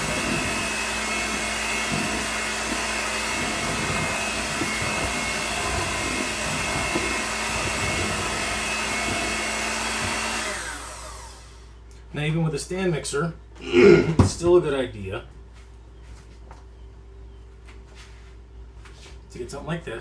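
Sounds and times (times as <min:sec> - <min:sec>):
electric hand mixer whining: 0:00.0 - 0:11.8.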